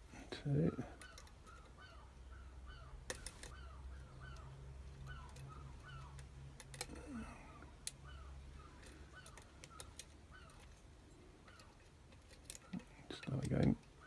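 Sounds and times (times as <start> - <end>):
bird chirping: 0.4 - 14.0.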